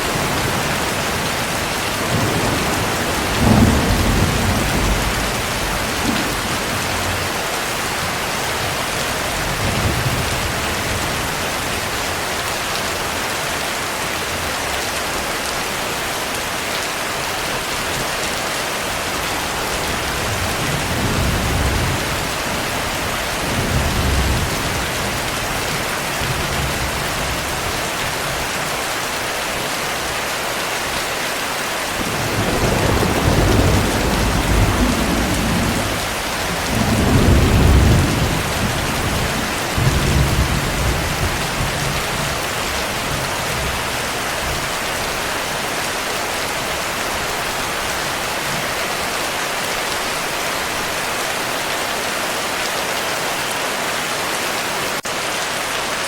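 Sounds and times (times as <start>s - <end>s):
thunder rumbling: 0.0s - 11.3s, 32.0s - 44.6s
heavy rain: 0.0s - 56.0s.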